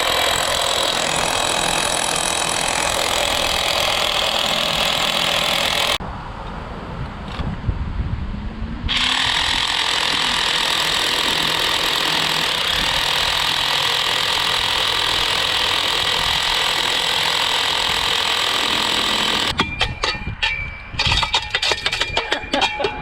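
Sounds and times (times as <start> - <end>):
power tool rattling: 0.0 - 6.0, 8.9 - 19.6.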